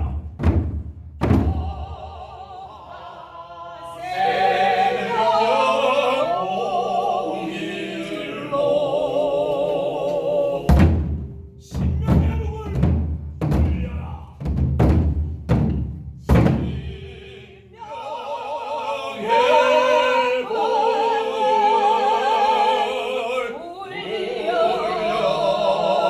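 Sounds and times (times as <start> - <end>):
barrel drum strokes: 0.0 - 2.0, 10.7 - 17.2.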